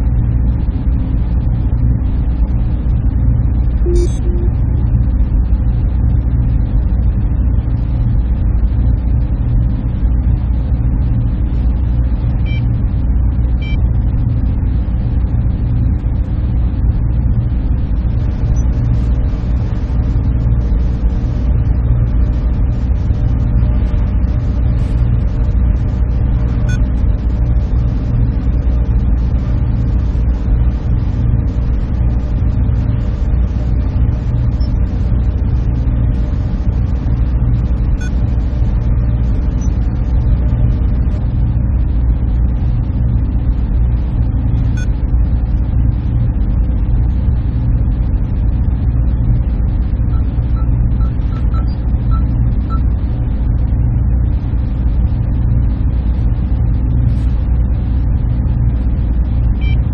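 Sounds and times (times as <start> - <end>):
server machines humming: 3.7 - 5.0, 12.3 - 12.9, 13.5 - 14.2, 17.2 - 41.3, 49.8 - 53.0, 59.2 - 59.9.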